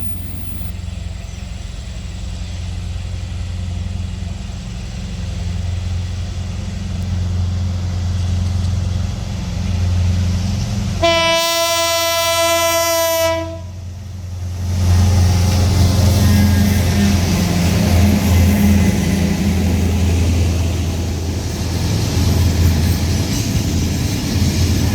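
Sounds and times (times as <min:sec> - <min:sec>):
diesel engine humming: 0:00.0 - 0:11.1, 0:13.3 - 0:24.9
train horn blast: 0:11.0 - 0:13.8.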